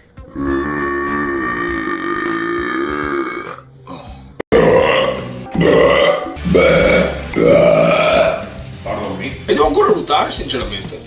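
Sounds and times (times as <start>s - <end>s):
man burping: 0.3s - 3.7s, 4.5s - 8.5s.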